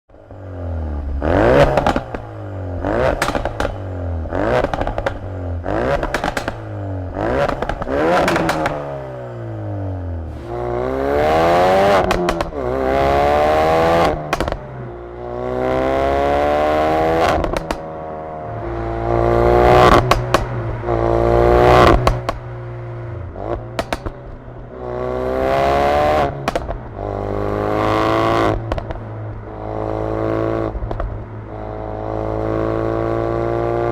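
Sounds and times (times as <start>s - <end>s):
car engine revving: 0.2s - 33.9s
exhaust pops and bangs: 1.7s - 2.3s, 3.0s - 3.8s, 4.5s - 5.3s, 5.9s - 6.7s, 7.4s - 8.9s, 12.0s - 12.6s, 14.2s - 14.6s, 17.2s - 17.8s, 19.8s - 20.8s, 21.8s - 22.5s, 23.6s - 24.4s, 26.4s - 26.9s, 28.5s - 29.4s.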